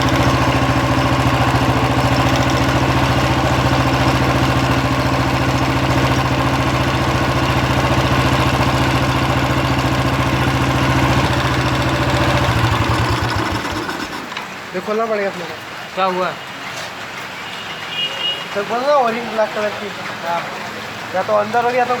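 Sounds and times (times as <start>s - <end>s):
motorcycle engine idling: 0.0s - 14.3s.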